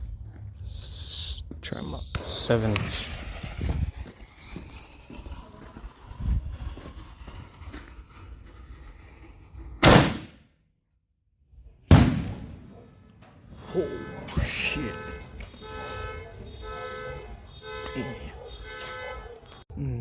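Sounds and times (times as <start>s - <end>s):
firework shell bursting boom: 2.2s - 8.2s, 9.8s - 10.4s, 11.9s - 13.4s
firework launch boom: 2.2s - 10.4s, 11.9s - 13.4s.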